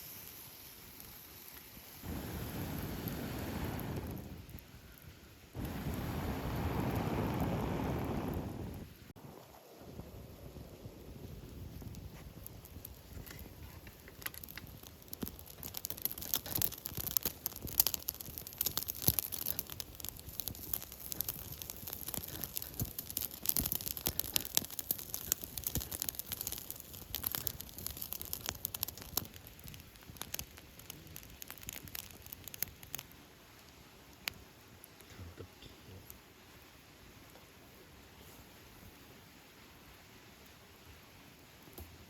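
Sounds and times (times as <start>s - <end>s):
campfire crackling and popping: 0.0s - 39.0s, 40.4s - 42.0s.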